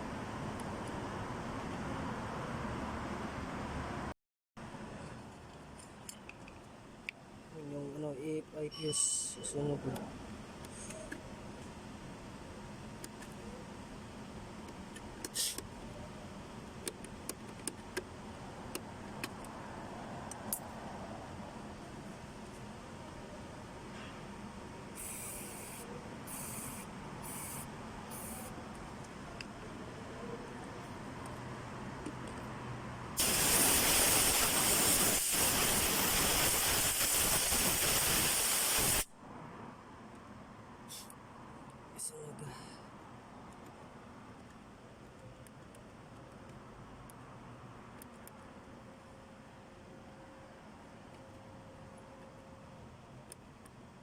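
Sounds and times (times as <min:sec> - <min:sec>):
pressurised spray hissing: 0:25.0 - 0:28.5, 0:33.2 - 0:39.1.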